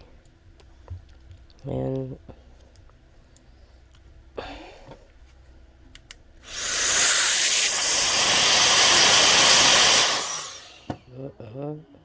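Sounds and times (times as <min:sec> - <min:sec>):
electric air blower whining: 0:06.5 - 0:10.8.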